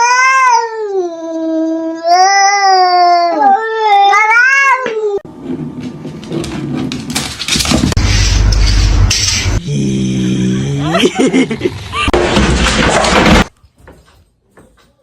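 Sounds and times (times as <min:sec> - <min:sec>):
cat yowling: 0:01.9 - 0:05.2
rustling noise: 0:05.3 - 0:09.6.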